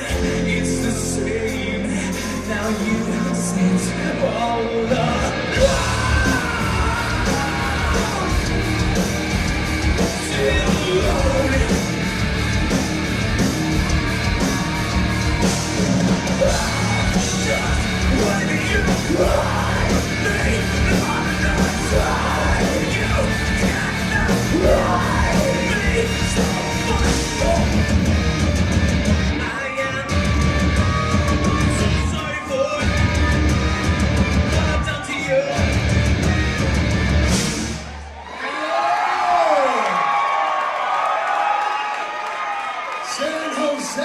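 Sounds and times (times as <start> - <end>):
live rock band playing: 0.0 - 38.0
steady drum beat: 5.5 - 29.4, 30.1 - 35.0.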